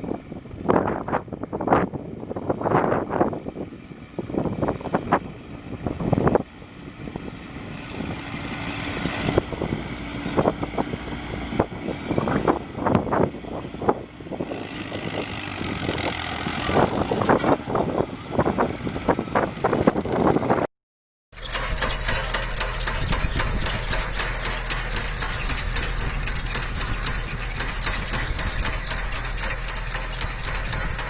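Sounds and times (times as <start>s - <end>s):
machinery running: 21.4s - 31.0s.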